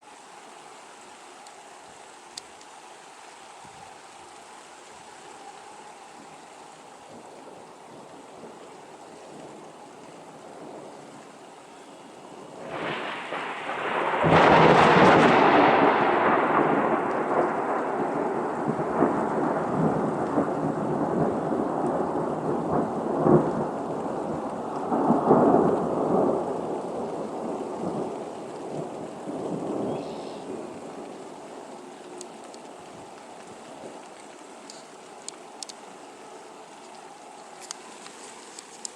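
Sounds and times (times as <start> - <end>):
steady rain: 0.0 - 38.9
thunder rumbling and cracking: 12.6 - 34.0.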